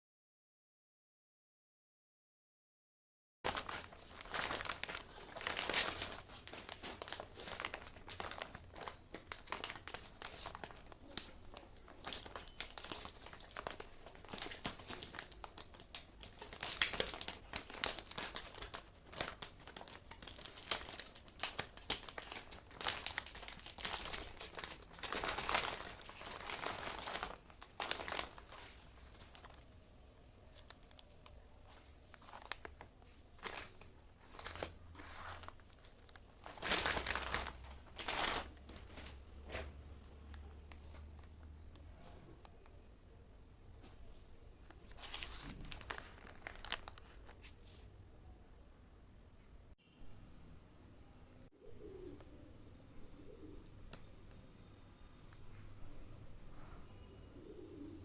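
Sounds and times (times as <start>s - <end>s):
packaging crinkling and tearing: 3.5s - 29.7s, 30.5s - 41.4s, 43.8s - 47.6s.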